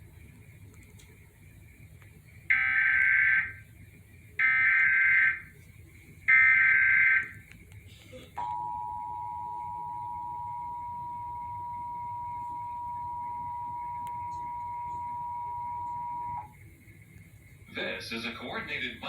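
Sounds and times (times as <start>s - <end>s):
digital data bursts: 2.5s - 3.6s, 17.7s - 19.0s
two-tone attention signal: 8.4s - 16.5s.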